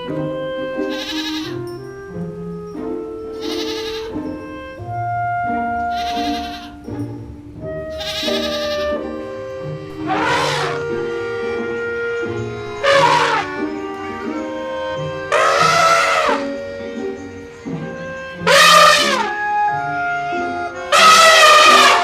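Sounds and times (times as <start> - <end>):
background music: 0.0 - 22.0
sheep or goat bleating: 0.9 - 1.6, 3.4 - 4.1, 5.9 - 6.8, 7.9 - 9.0, 10.0 - 10.9, 12.8 - 13.6, 15.3 - 16.5, 20.9 - 22.0.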